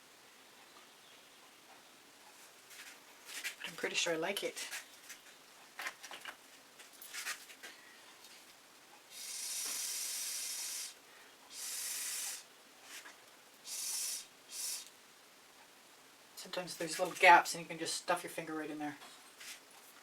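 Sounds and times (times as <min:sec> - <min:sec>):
pressurized gas hissing: 0:09.1 - 0:12.5, 0:13.6 - 0:14.9.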